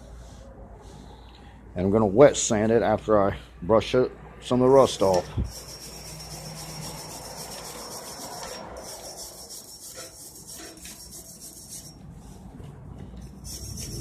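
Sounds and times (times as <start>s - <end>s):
brush scrubbing metal: 5.5s - 12.0s, 13.3s - 14.0s.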